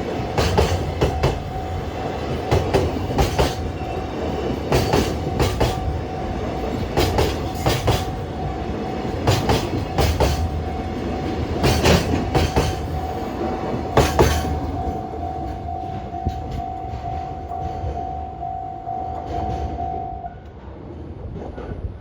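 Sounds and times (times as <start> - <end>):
wheels clacking over rail joints: 0.0 - 18.3
train rumble: 0.0 - 22.0
level crossing alarm ringing: 3.6 - 20.3.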